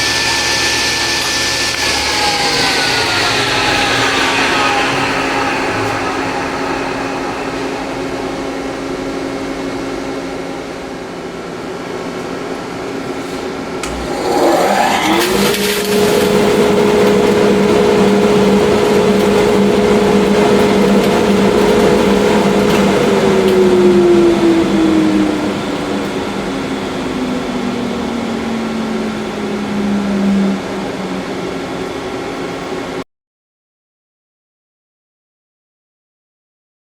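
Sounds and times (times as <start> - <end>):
electric motor humming: 0.0 - 8.7, 13.8 - 30.5
motor whine: 0.0 - 10.2, 13.8 - 32.9.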